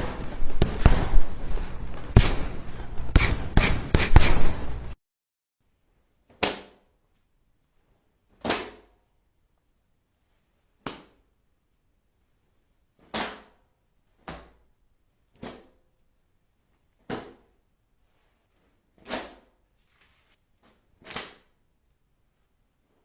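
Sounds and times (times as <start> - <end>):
body hit impacts: 0.0 - 4.9.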